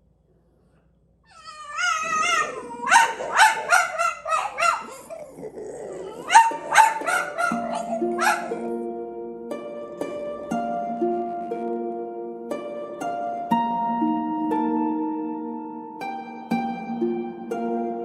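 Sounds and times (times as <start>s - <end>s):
dogs howling: 1.3s - 8.7s
dogs barking and yipping: 1.3s - 8.8s
plucked harp-like music: 6.0s - 18.0s.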